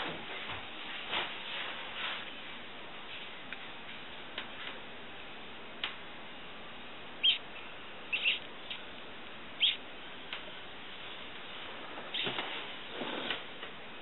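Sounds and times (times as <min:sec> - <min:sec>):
mouse squeaking: 0:07.2 - 0:07.4, 0:08.1 - 0:08.8, 0:09.6 - 0:09.8.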